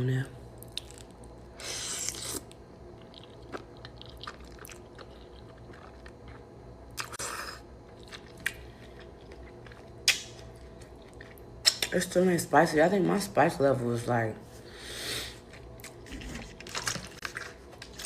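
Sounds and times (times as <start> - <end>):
person chewing pasta: 0.6 - 11.9.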